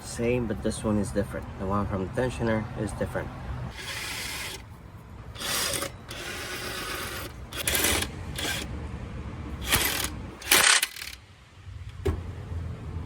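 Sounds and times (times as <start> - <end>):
ratchet wrench clicking: 3.7 - 4.6, 5.4 - 8.7, 9.6 - 11.2.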